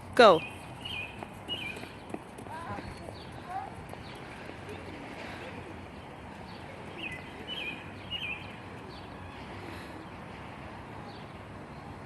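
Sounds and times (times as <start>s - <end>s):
outdoor background noise: 0.0s - 12.0s
bird chirps: 0.3s - 2.2s, 6.0s - 9.4s.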